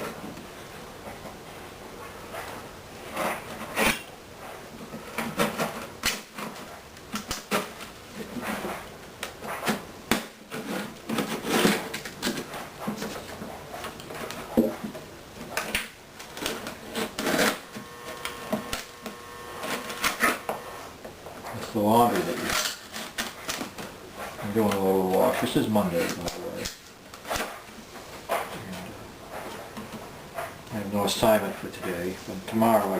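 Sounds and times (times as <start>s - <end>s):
faint steady hum: 0.0s - 32.9s
hand tools on wooden guitar: 9.4s - 20.8s.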